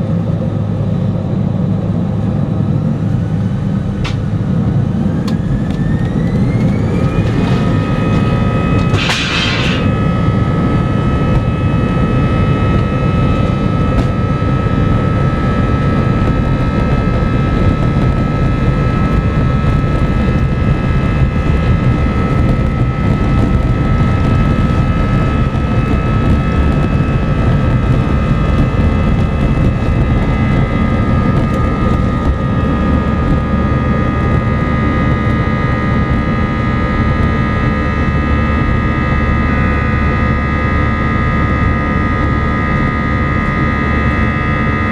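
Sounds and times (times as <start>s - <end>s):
jet engines rumbling in cabin: 0.0s - 44.9s
engine whining tones: 2.8s - 37.5s.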